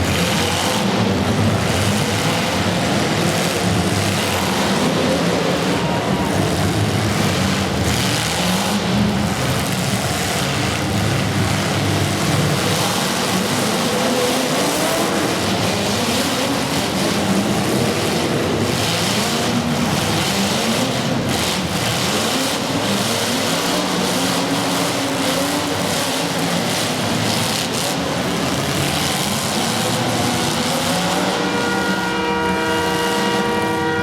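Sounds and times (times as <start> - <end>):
racing engines accelerating: 0.0 - 34.0
horn steady chord: 31.2 - 34.0.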